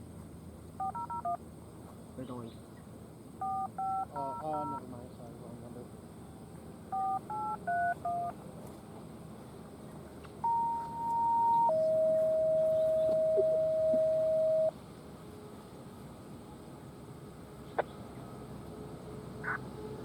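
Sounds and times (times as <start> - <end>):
touch-tone beeps: 0.8 - 1.4, 3.4 - 4.8, 7.0 - 8.3, 10.4 - 14.7
two-tone page: 3.4 - 4.8, 10.4 - 14.7.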